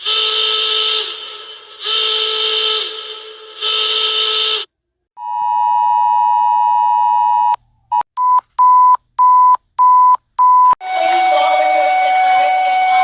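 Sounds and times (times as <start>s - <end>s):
harsh alarm tone: 0.0s - 7.5s.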